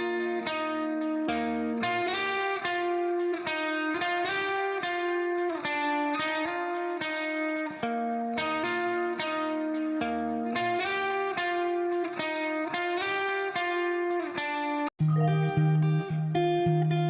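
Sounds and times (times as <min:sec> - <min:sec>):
plucked guitar melody: 0:00.0 - 0:17.0.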